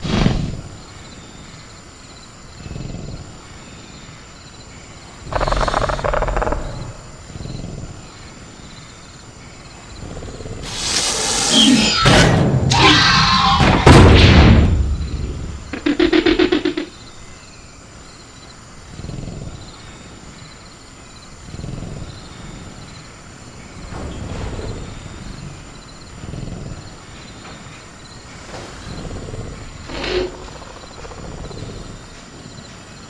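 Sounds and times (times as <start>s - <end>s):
crickets chirping: 0.0s - 33.0s
rattling growl: 5.2s - 8.0s, 28.8s - 32.1s
creature screeching and roaring: 10.6s - 14.0s.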